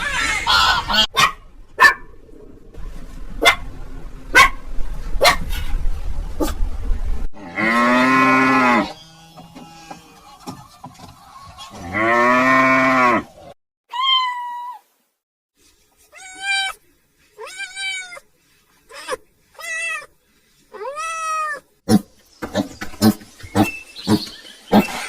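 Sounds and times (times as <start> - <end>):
cow mooing: 7.4 - 10.2, 11.8 - 13.3
cat meowing: 13.9 - 14.8, 17.4 - 18.2, 18.9 - 20.1, 20.7 - 21.6.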